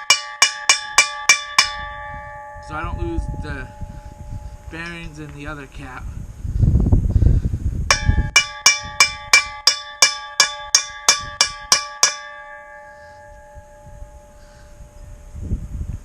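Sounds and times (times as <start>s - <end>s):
hammer striking steel: 0.0s - 5.1s, 7.9s - 14.3s.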